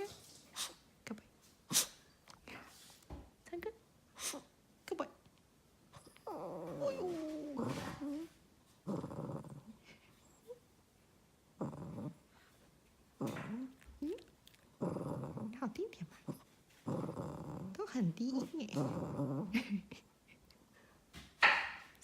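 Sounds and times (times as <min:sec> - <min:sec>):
dog moaning: 0:06.0 - 0:10.5, 0:11.6 - 0:12.3, 0:13.2 - 0:19.8.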